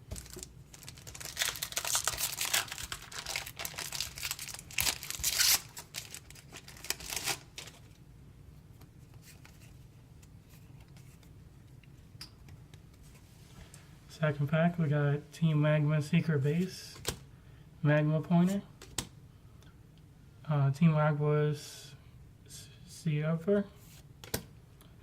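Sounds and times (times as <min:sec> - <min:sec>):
foil wrapper tearing and crinkling: 0:00.1 - 0:07.8.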